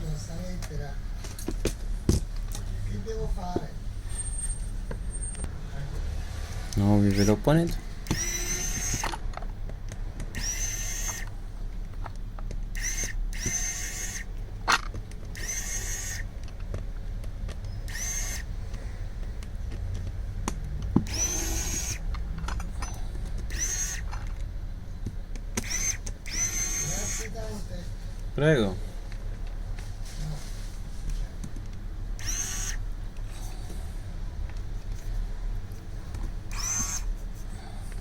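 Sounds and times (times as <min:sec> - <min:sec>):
power tool motor whirring: 0:06.8 - 0:09.2, 0:10.3 - 0:11.4, 0:12.7 - 0:16.3, 0:17.7 - 0:18.6, 0:21.0 - 0:22.1, 0:22.7 - 0:24.3, 0:25.5 - 0:27.5, 0:32.2 - 0:33.6, 0:36.5 - 0:37.2
sharp clicks: 0:08.1 - 0:09.2, 0:25.0 - 0:27.2.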